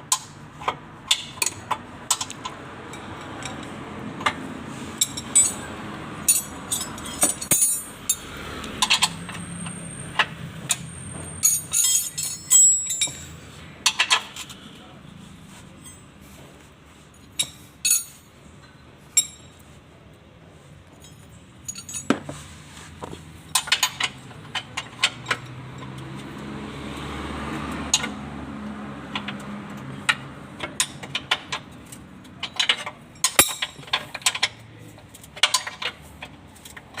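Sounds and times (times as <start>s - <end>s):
metal tools clinking: 5.0s - 14.6s, 15.8s - 16.1s, 17.2s - 19.6s, 20.9s - 22.5s, 32.4s - 34.6s.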